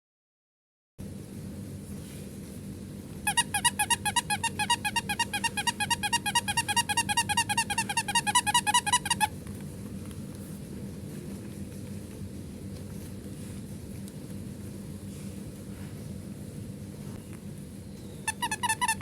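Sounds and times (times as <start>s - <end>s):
rapid toy squeaks: 3.2s - 9.3s, 18.2s - 19.0s.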